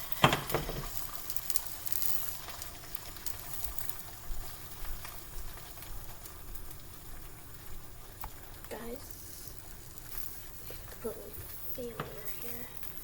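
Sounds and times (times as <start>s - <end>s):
egg sizzling in a pan: 0.0s - 13.0s.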